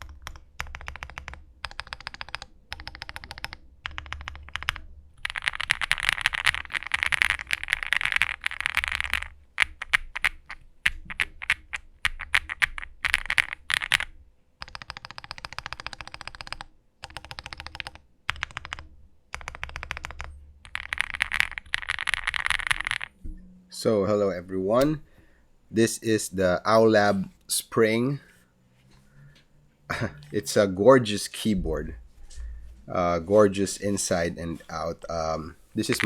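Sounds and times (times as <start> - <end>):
mechanical keyboard typing: 0.0 - 23.1, 35.8 - 36.0.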